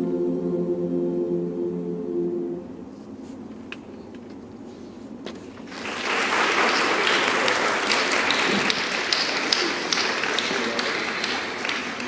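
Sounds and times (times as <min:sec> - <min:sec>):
audience applauding: 0:05.7 - 0:12.0.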